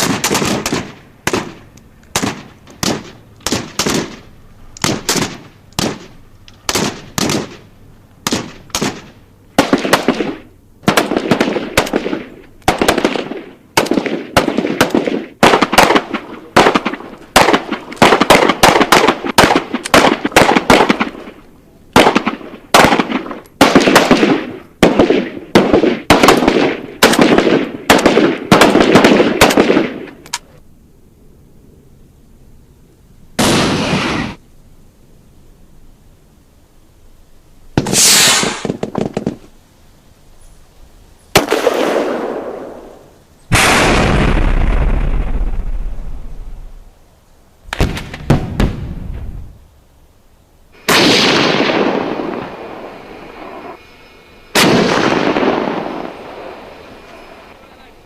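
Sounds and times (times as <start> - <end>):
automatic gunfire bursts: 0.0 - 4.2, 4.8 - 6.1, 6.7 - 7.6, 8.2 - 21.2, 22.0 - 30.0
single gunshots: 0.0 - 7.6, 8.2 - 30.2, 33.4 - 34.4, 37.8 - 39.5, 41.3 - 45.7, 47.7 - 49.2, 50.8 - 53.5, 54.5 - 56.7.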